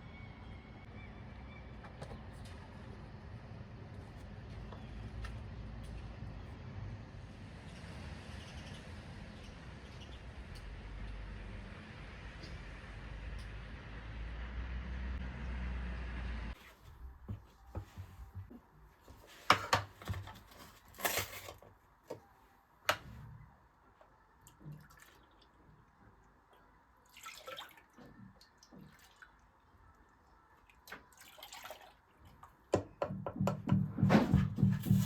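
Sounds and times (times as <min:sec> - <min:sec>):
utensils and dishes clattering: 0:19.6 - 0:21.6.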